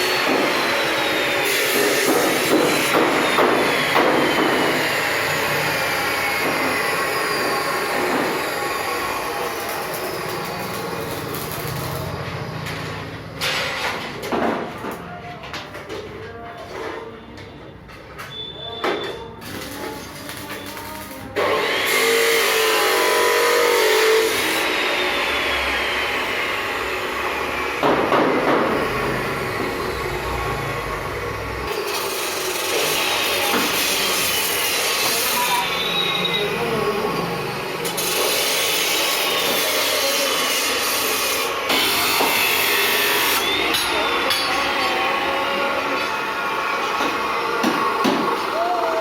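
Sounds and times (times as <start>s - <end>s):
power tool grinding metal: 0.0s - 12.2s, 19.6s - 27.8s, 31.7s - 48.0s.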